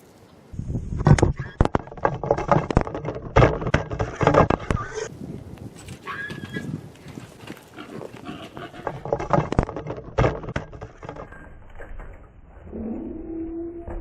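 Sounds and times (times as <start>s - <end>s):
hogs grunting: 7.7s - 9.4s.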